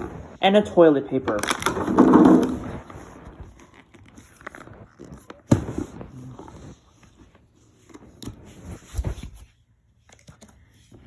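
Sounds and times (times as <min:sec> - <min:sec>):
packaging rustling: 0:01.4 - 0:09.5.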